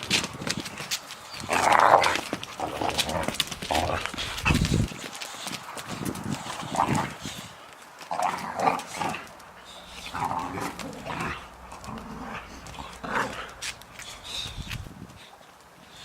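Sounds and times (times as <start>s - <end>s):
sharp clicks from scuffling: 0.0s - 15.8s
dogs vocalising: 8.4s - 15.4s.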